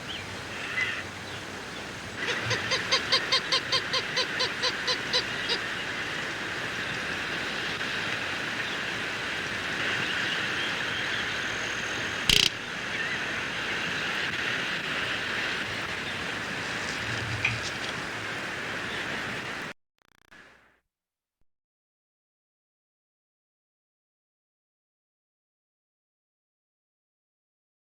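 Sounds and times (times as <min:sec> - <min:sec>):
outdoor background hiss: 0:00.0 - 0:19.7.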